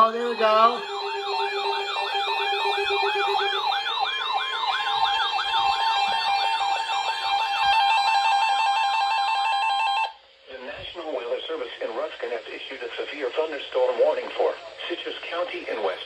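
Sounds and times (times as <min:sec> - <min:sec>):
steady alert tone: 0:00.0 - 0:06.2
sweeping siren alarm tone: 0:00.0 - 0:10.2.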